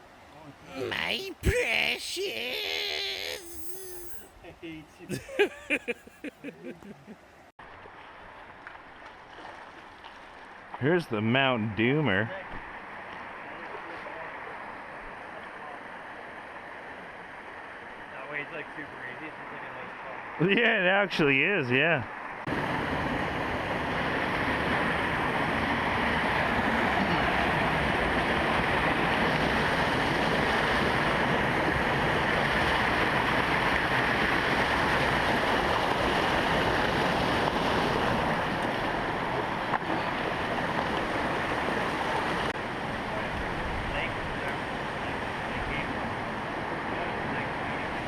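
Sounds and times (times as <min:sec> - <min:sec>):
creek water running: 0:04.4 - 0:10.8.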